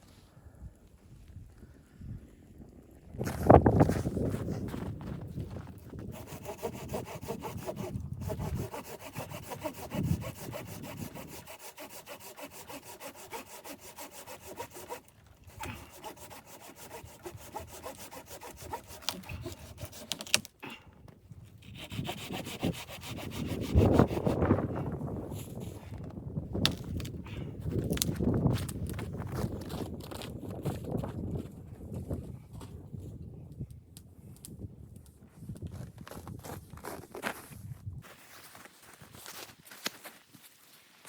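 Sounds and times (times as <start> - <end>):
hand saw cutting wood: 6.0 - 20.8, 21.6 - 24.8.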